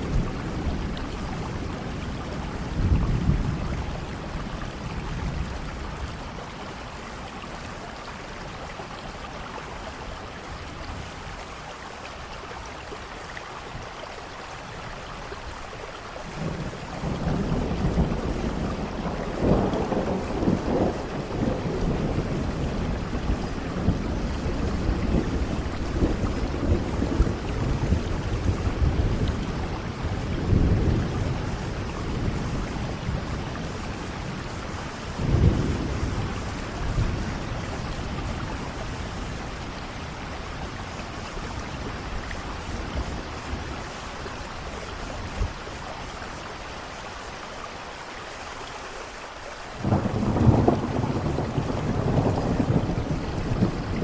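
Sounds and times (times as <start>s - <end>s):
rolling thunder: 0.0s - 6.5s, 16.3s - 43.9s, 49.8s - 54.0s
steady rain: 0.0s - 54.0s.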